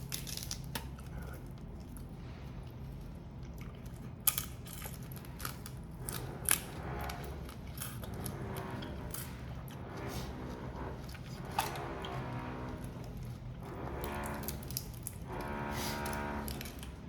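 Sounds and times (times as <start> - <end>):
shells cracking and crunching: 0.0 - 1.1, 3.6 - 6.7.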